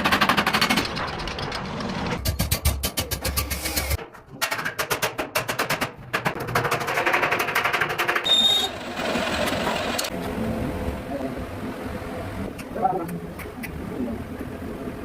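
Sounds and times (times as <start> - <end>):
steady machine noise: 7.0 - 12.5
high squeal: 8.2 - 8.8.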